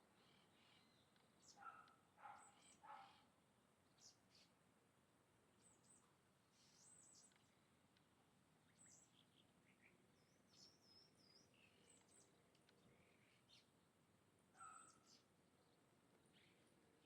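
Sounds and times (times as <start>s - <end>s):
faint bird chirps: 0.0s - 4.6s, 5.6s - 7.7s, 8.6s - 13.8s, 14.5s - 17.0s.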